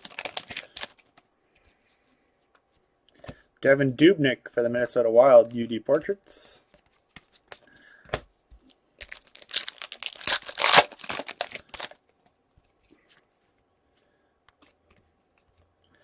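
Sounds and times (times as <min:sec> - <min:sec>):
foil wrapper tearing and crinkling: 0:00.0 - 0:01.1, 0:09.0 - 0:12.0.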